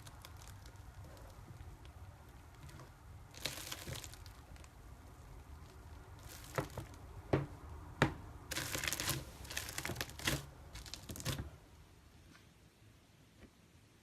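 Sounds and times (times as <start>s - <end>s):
slime popping and crackling: 0.0s - 7.2s, 8.4s - 11.6s.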